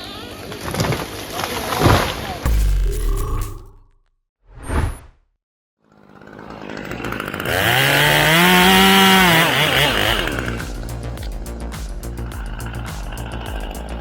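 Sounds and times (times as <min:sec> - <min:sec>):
chainsaw revving: 0:05.9 - 0:14.0.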